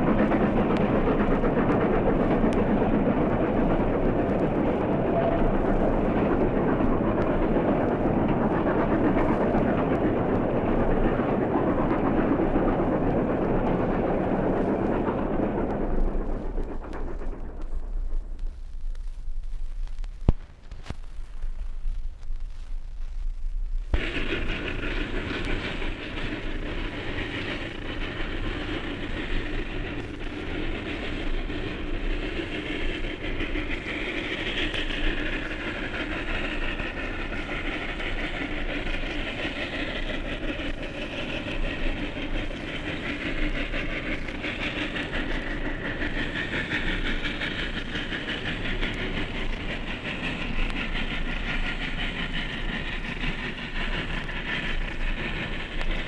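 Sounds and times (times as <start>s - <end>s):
wheels clattering on rails: 0.0s - 18.6s, 23.9s - 56.0s
train running: 0.0s - 22.7s, 23.7s - 56.0s.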